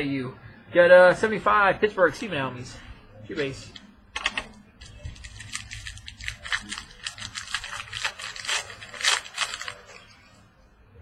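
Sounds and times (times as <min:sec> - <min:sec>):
foil wrapper crinkling: 0:04.8 - 0:10.3.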